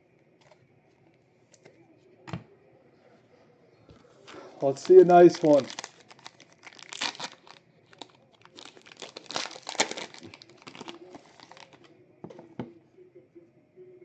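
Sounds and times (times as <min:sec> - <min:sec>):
card pack wrapper tearing: 0:04.7 - 0:11.9.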